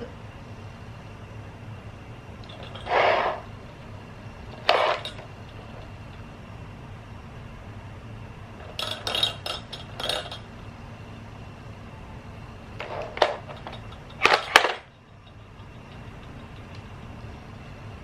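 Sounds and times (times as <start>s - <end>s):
low steady hum: 0.0s - 18.0s
plastic toy clattering: 12.8s - 14.9s.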